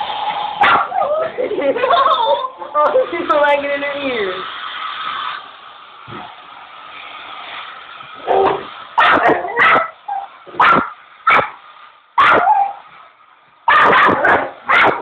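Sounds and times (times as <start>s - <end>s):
dog barking: 0.6s - 1.0s, 8.2s - 11.6s, 12.2s - 12.8s, 13.7s - 15.0s.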